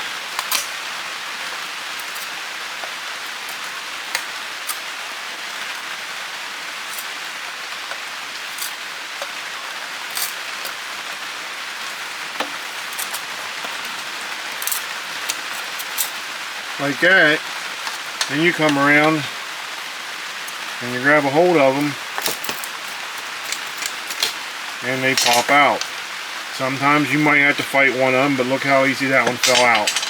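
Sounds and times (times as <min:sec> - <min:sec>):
steady hiss: 0:00.0 - 0:30.0.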